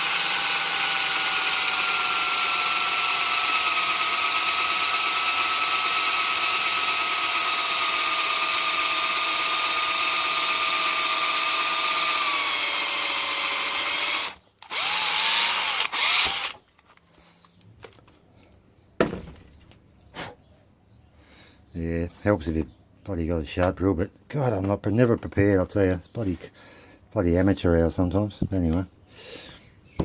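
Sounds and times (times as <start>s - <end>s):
electric drill boring into lock: 0.0s - 16.6s.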